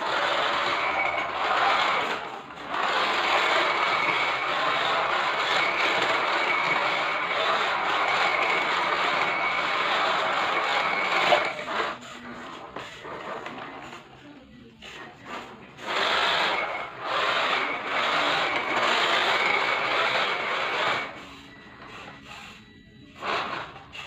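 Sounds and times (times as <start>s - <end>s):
model truck motor whirring: 0.0s - 24.0s
tyres scrubbing surface: 0.0s - 24.0s.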